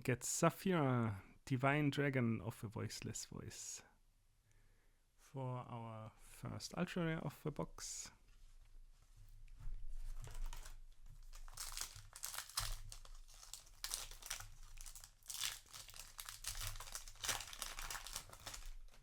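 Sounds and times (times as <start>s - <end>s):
cards and wrapper crinkling: 10.1s - 19.0s.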